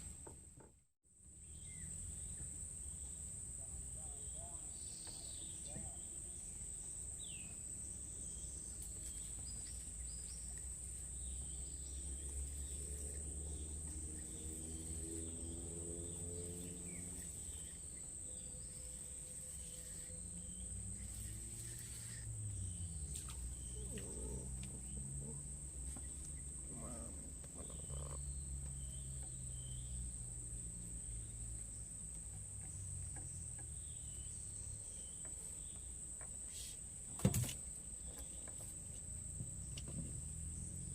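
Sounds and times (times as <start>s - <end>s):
insects droning: 1.3s - 40.9s.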